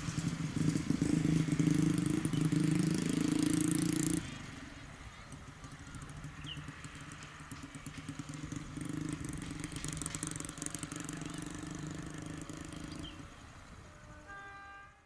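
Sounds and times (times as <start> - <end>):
clatter of train wheels: 5.3 - 12.7.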